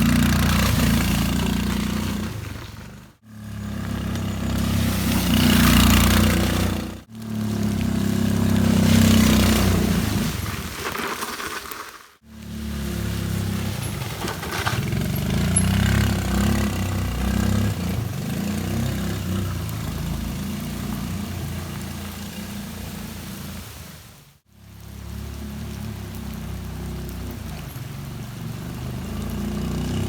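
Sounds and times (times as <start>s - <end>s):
scooter engine running: 0.0s - 10.2s, 12.5s - 21.5s, 25.4s - 30.0s.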